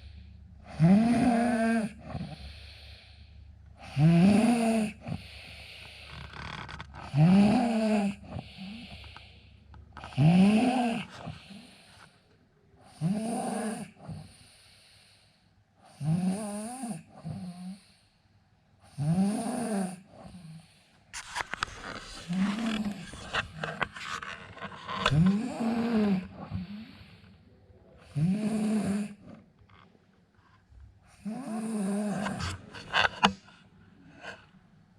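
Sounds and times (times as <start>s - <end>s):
man snoring: 0.7s - 2.6s, 3.8s - 9.3s, 10.0s - 11.8s, 12.9s - 14.4s, 15.9s - 17.8s, 18.9s - 20.6s, 21.6s - 27.2s, 28.0s - 29.3s, 31.2s - 33.1s
clicking and rustling: 21.2s - 25.4s.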